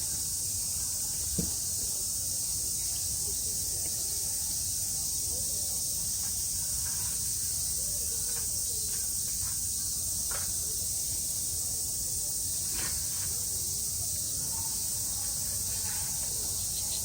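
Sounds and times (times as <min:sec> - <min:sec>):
high-pitched insect chorus: 0:00.0 - 0:17.0.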